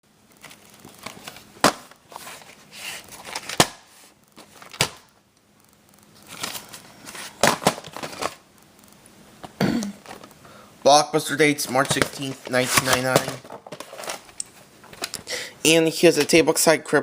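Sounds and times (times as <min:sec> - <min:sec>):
rustling: 0:11.5 - 0:15.2.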